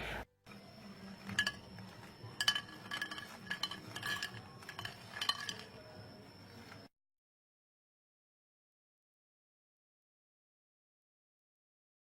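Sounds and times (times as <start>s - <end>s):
utensil clinking on kitchenware: 0.9s - 6.9s.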